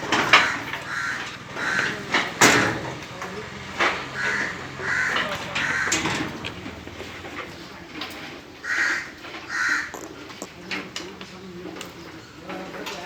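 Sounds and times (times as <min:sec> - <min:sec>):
sharp knocks: 0:00.0 - 0:07.2
crows cawing: 0:00.1 - 0:07.2, 0:08.6 - 0:10.2.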